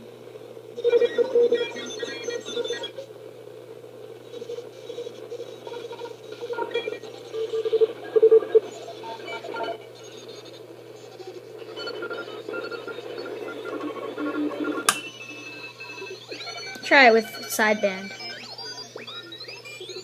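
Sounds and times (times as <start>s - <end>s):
static hiss: 0.0s - 20.0s
radio data beeping: 0.8s - 3.1s, 3.9s - 20.0s
sharp click: 14.8s - 15.1s.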